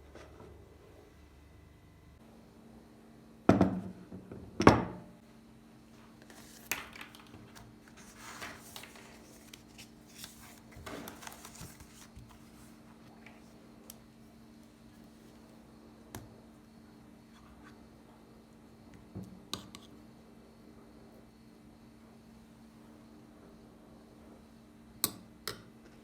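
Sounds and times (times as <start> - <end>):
objects being handled: 6.2 - 12.8.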